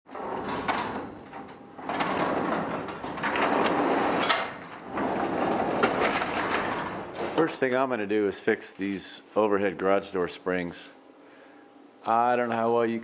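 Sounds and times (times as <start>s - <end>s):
garage door rattling and rumbling: 0.1s - 7.8s.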